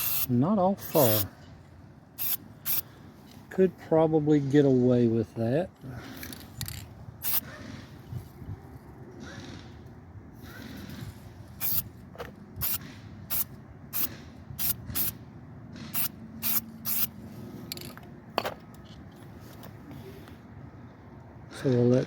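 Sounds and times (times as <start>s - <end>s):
aerosol spray can hissing: 0.0s - 0.3s, 2.2s - 2.8s, 11.6s - 11.8s, 12.6s - 15.1s, 15.9s - 17.1s.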